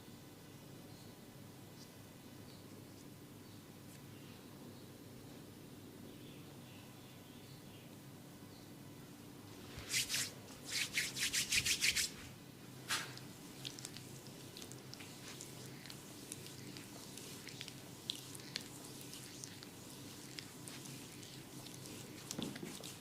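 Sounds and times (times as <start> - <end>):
scratchy rubbing at ear: 9.6 - 12.2, 12.9 - 23.0.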